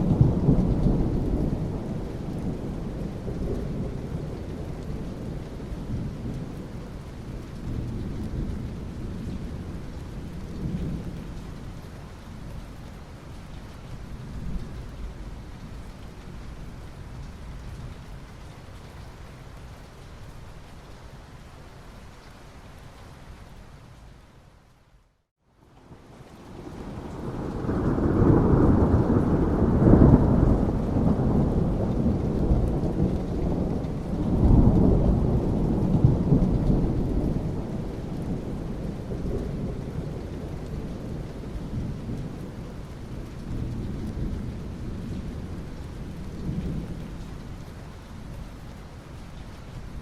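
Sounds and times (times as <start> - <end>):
thunder rumbling: 0.0 - 11.6, 26.5 - 48.4
steady rain hiss: 0.0 - 50.0.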